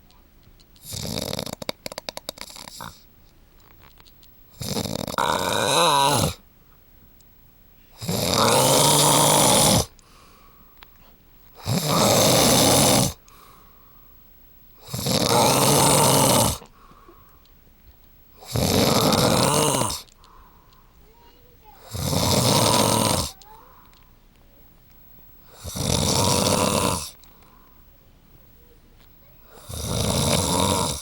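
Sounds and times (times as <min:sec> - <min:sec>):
man snoring: 0:00.8 - 0:01.7, 0:04.6 - 0:06.4, 0:08.0 - 0:09.9, 0:11.6 - 0:13.2, 0:14.8 - 0:16.7, 0:18.4 - 0:20.1, 0:21.9 - 0:23.4, 0:25.5 - 0:27.2, 0:29.6 - 0:31.0.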